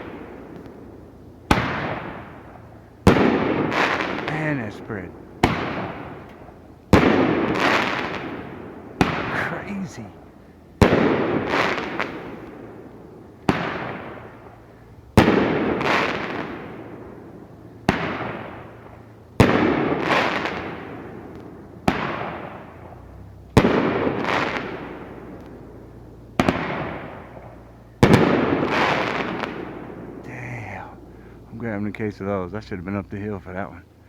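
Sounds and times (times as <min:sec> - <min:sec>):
firework crackling: 0:00.0 - 0:25.8, 0:26.4 - 0:32.2
firework breaks: 0:03.1 - 0:06.3
firework launch reports: 0:03.1 - 0:06.3, 0:06.9 - 0:12.8, 0:28.0 - 0:33.9.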